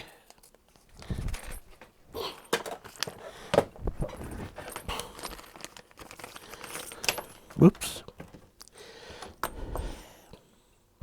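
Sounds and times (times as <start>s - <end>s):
plastic bag crinkling: 2.6s - 8.3s.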